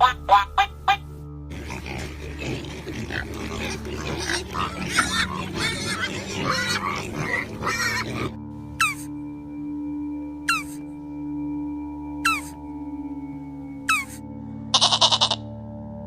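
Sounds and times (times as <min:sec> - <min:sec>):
animals calling: 0:00.0 - 0:09.2, 0:10.4 - 0:10.9, 0:12.2 - 0:12.6, 0:13.8 - 0:15.5.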